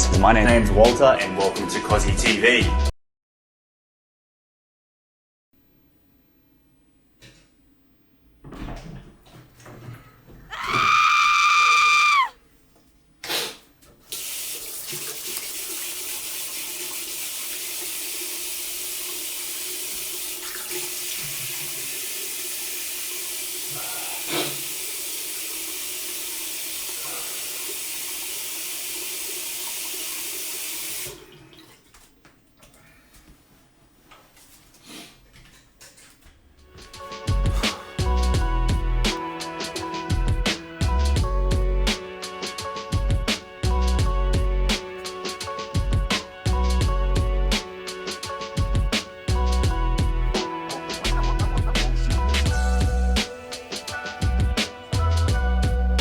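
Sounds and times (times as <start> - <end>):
tap water running into sink: 14.1 - 31.7.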